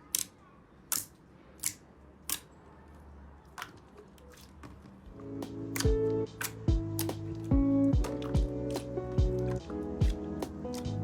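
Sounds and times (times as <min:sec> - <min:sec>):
slime clicking: 0:00.0 - 0:02.6, 0:05.8 - 0:11.0
music: 0:05.1 - 0:11.0.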